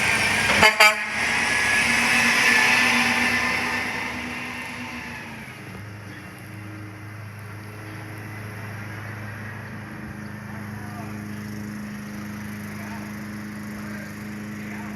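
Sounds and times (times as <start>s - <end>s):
vehicle engine humming: 0.0s - 14.9s.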